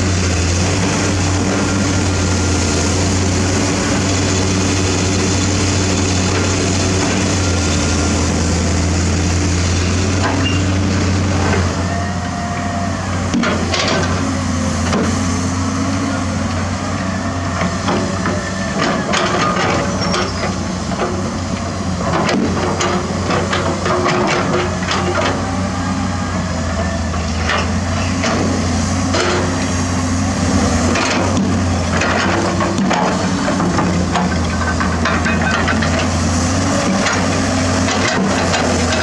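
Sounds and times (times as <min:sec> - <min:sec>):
diesel engine running: 0:00.0 - 0:39.0
metallic clanks and knocks: 0:30.9 - 0:36.1.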